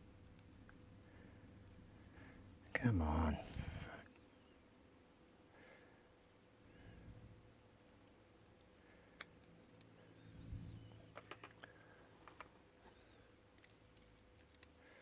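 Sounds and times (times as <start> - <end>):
small metal clicks and taps: 11.1 - 12.6, 13.5 - 14.8.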